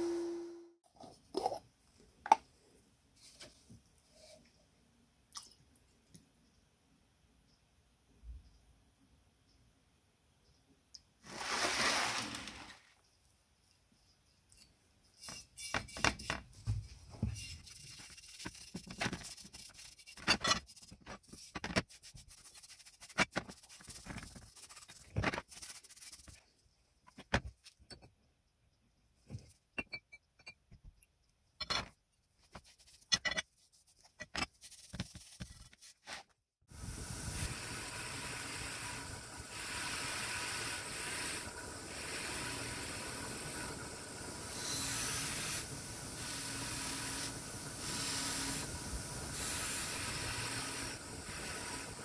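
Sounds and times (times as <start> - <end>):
steady hiss: 36.7 - 52.0.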